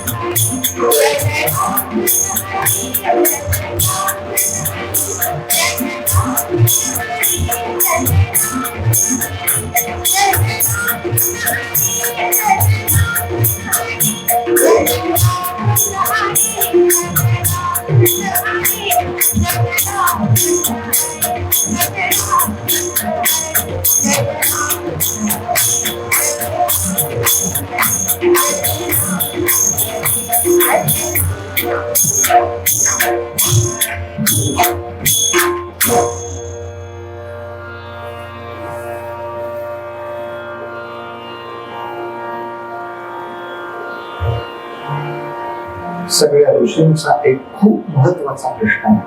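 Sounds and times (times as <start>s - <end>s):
voices singing: 0.0s - 11.3s, 12.0s - 33.9s
drum strokes: 0.0s - 36.7s
jingling hand cymbals: 0.0s - 37.2s
sustained harmonium notes: 0.0s - 49.0s.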